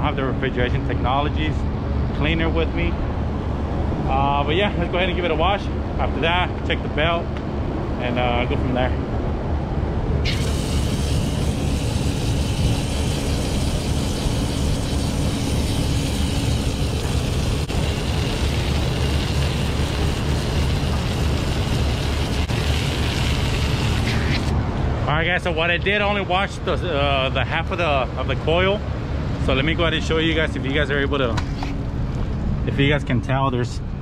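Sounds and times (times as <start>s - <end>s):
low machinery hum: 0.0s - 34.0s
water spraying from a hose: 10.3s - 24.5s.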